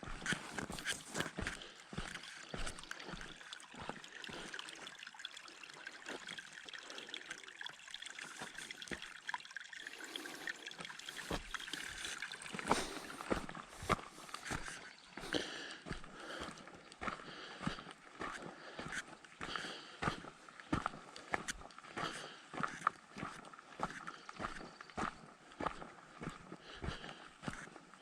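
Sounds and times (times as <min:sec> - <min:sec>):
footsteps on dirt trail: 0:00.0 - 0:04.4, 0:11.0 - 0:28.0
creek trickling: 0:00.0 - 0:28.0.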